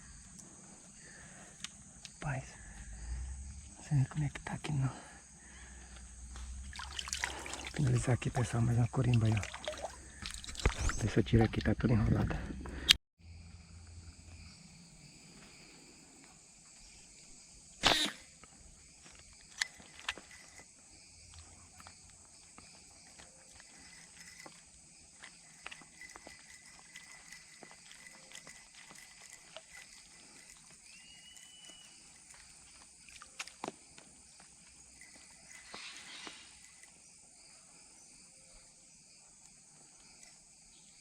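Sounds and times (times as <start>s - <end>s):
insects droning: 0.0s - 41.0s
faint whistle: 30.9s - 32.1s.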